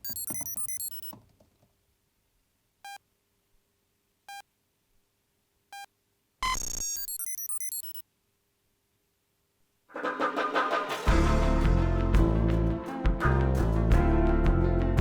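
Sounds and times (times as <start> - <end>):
computer chirping tones: 0.0 - 1.1, 5.8 - 8.0
single computer beeps: 0.0 - 1.1, 5.8 - 8.0.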